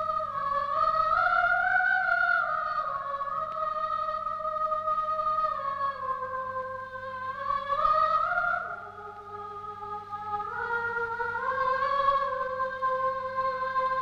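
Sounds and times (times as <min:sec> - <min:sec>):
faint low hum: 0:00.0 - 0:14.0.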